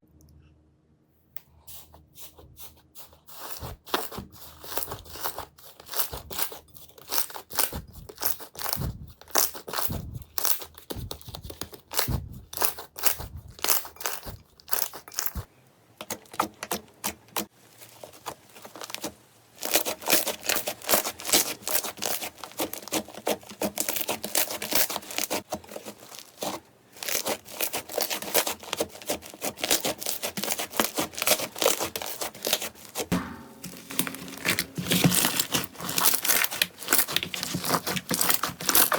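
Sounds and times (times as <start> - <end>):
low squishy thumps: 10.9 - 12.4, 33.1 - 37.2
slime crackling and popping: 16.1 - 38.9.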